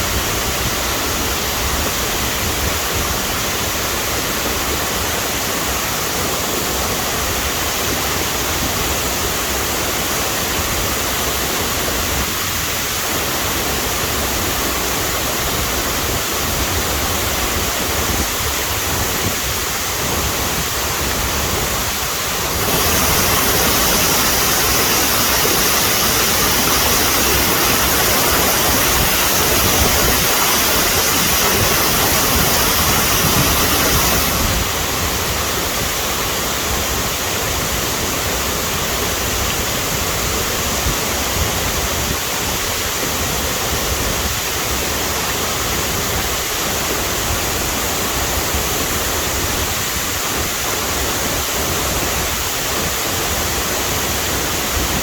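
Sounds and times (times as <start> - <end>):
waterfall rushing: 0.0 - 55.0.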